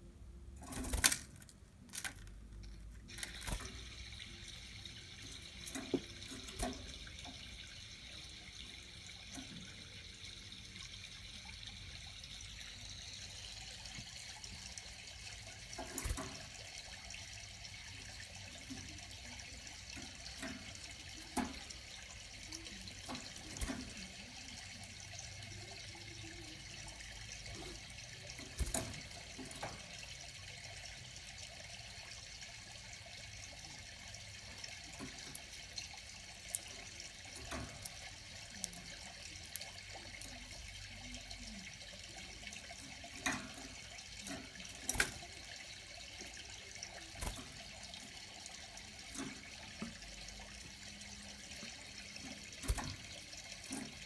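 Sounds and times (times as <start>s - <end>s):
running water hissing: 3.0s - 54.0s
light clicks and taps: 18.1s - 30.3s, 33.8s - 45.5s, 46.1s - 54.0s.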